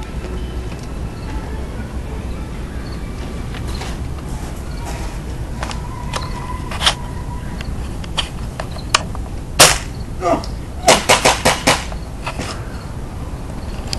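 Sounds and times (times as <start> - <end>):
airsoft gun shots: 9.6 - 10.0, 10.8 - 12.0.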